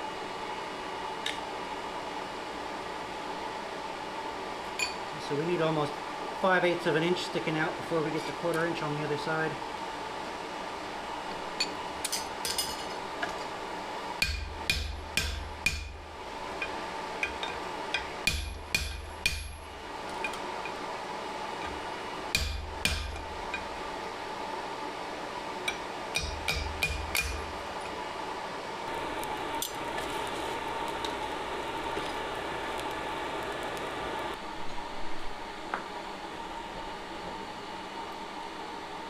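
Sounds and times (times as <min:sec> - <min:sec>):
hammer striking steel on anvil: 0:14.2 - 0:16.0, 0:16.6 - 0:20.8, 0:22.4 - 0:23.7, 0:25.7 - 0:27.5.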